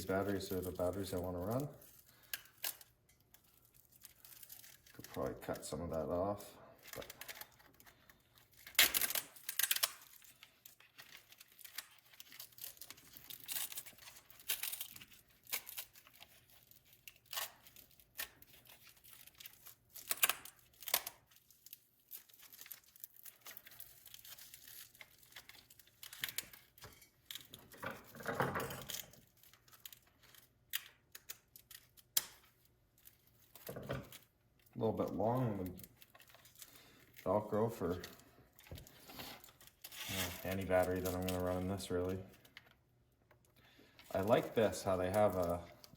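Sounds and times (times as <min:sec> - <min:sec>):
hook-and-loop strap ripping: 0:06.8 - 0:34.3, 0:35.4 - 0:42.1.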